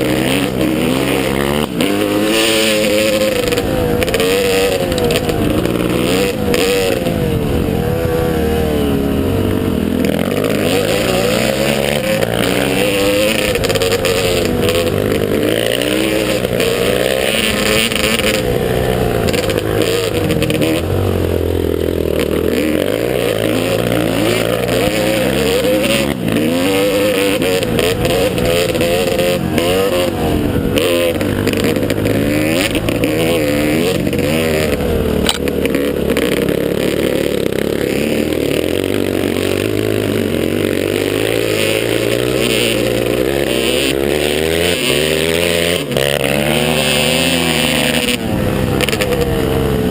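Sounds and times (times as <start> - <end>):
motorcycle engine revving: 0.0 - 49.9.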